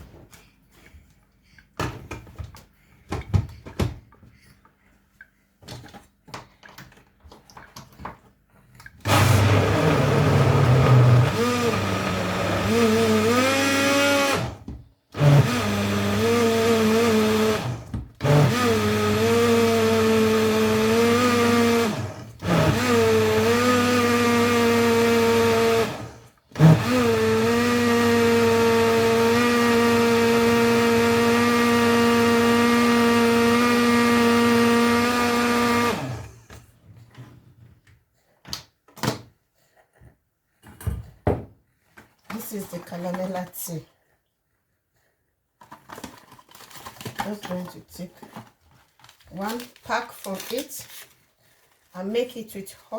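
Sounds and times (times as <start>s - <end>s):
electric blender running: 9.1s - 14.6s, 15.2s - 36.4s.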